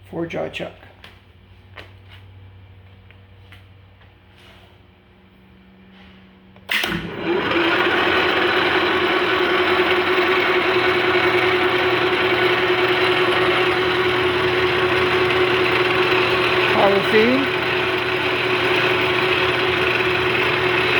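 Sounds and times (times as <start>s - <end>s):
lathe motor whirring: 6.7s - 20.9s.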